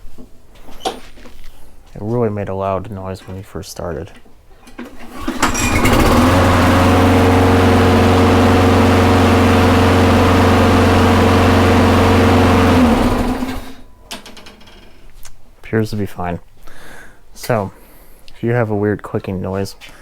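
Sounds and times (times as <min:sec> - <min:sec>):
lawn mower engine running: 0:04.8 - 0:14.0.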